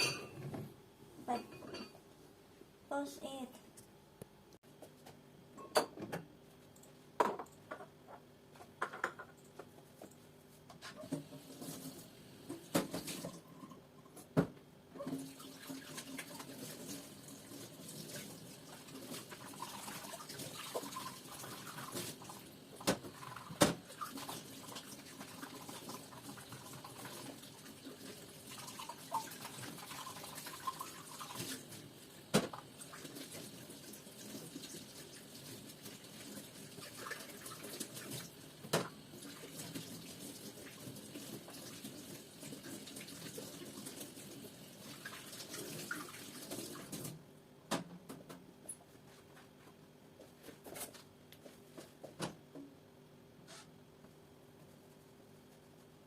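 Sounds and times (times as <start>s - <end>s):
dishes clinking: 0.0s - 0.7s, 1.3s - 2.0s, 5.6s - 6.2s
running water: 15.0s - 47.2s.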